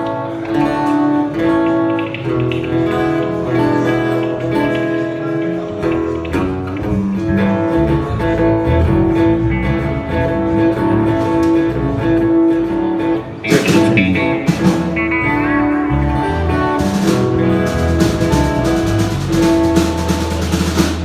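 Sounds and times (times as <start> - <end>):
bass notes: 0.0 - 21.0
guitar music: 0.0 - 21.0
drum hits: 13.5 - 21.0.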